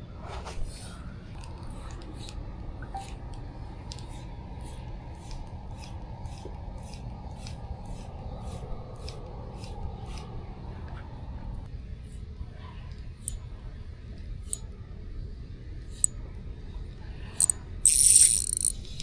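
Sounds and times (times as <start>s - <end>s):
light sharp clicks: 17.9s - 18.8s.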